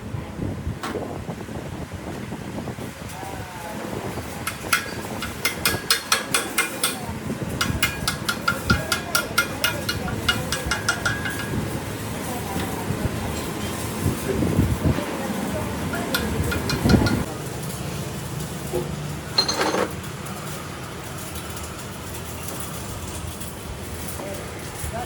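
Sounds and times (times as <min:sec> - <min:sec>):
hammer tapping on steel: 0:04.5 - 0:11.7, 0:15.9 - 0:17.3.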